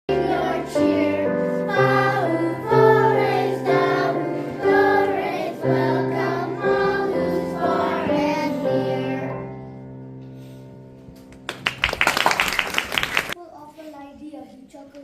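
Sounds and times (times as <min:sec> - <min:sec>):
choir singing slow chords: 0:00.1 - 0:10.4.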